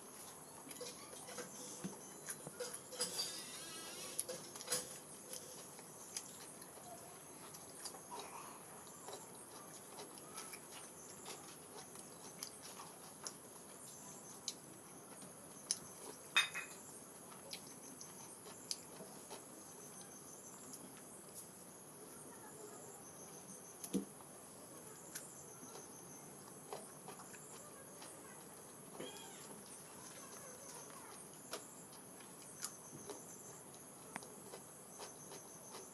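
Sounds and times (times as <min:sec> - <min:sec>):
person eating from a plate: 0:00.2 - 0:20.0, 0:28.7 - 0:35.9
crickets chirring: 0:00.4 - 0:35.9.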